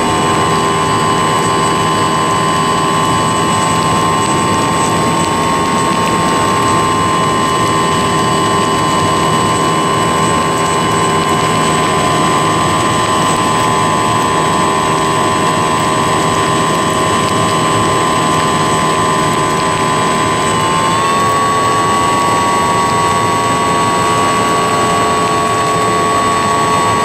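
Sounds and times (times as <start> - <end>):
model plane motor whining: 0.0 - 27.0
rush of noise: 0.0 - 27.0.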